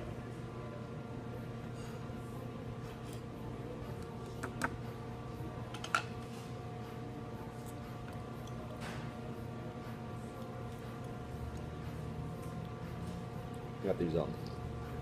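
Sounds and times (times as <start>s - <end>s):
restaurant room hum: 0.0s - 15.0s
tableware clicks and clinks: 5.7s - 6.3s.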